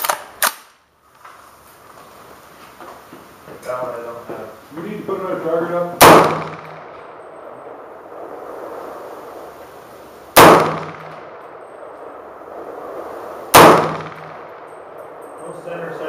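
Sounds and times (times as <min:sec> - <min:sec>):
rifle shots: 0:06.0 - 0:09.6, 0:10.3 - 0:15.9.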